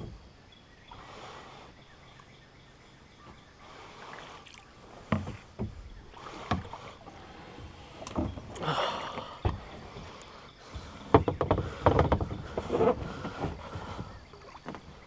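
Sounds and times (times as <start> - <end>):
paddle strokes splashing water: 3.7 - 15.0.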